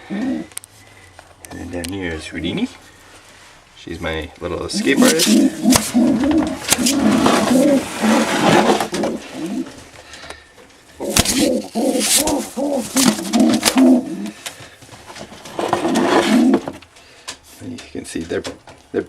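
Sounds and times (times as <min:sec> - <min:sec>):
pigeons cooing: 0:00.0 - 0:00.6, 0:04.7 - 0:09.9, 0:11.0 - 0:14.5, 0:15.5 - 0:16.8.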